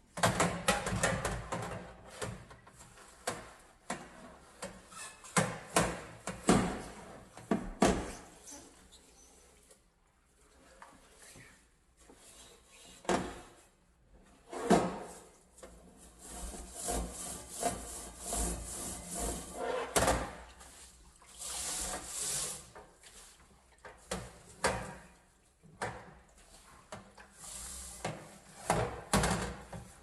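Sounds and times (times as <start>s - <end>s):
brush scrubbing a stove: 16.0s - 23.5s.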